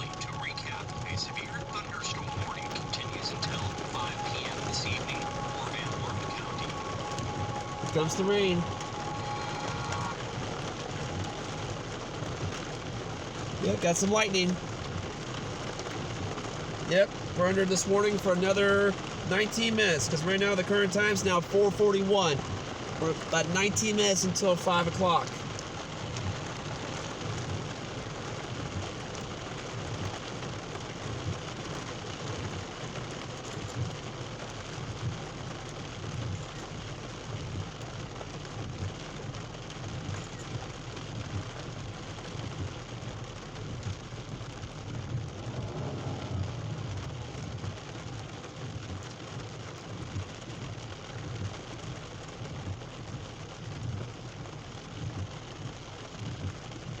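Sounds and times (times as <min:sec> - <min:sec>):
rain splashing on surfaces: 0:00.0 - 0:57.0
low thunder rumble: 0:42.4 - 0:48.4.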